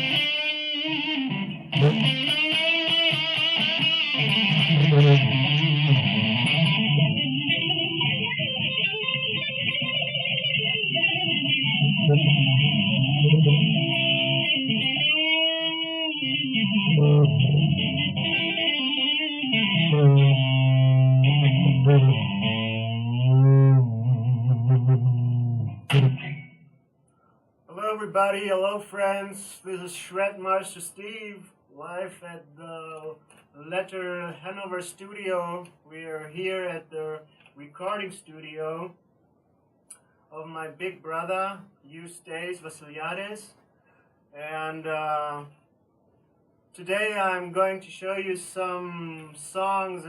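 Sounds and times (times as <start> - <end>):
electric guitar solo: 0.0 - 26.7.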